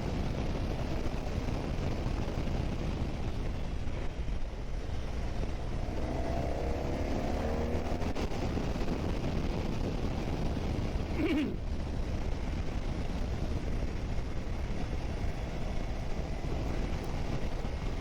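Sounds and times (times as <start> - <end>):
wind rushing: 0.0 - 18.0
motorcycle engine revving up: 5.6 - 8.5.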